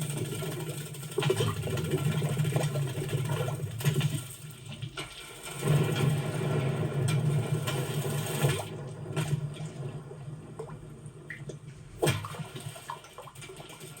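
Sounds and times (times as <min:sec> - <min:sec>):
water dripping: 0:07.0 - 0:14.0.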